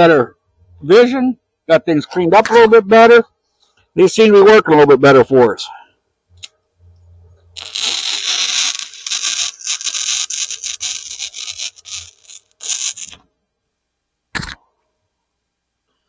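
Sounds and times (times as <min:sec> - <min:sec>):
faint low hum: 0:00.1 - 0:07.6
welding arc crackling: 0:07.6 - 0:13.2.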